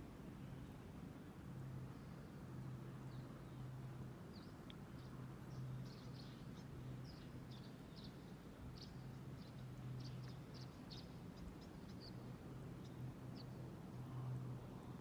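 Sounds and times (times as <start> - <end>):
small birds chirping: 3.1 - 15.0.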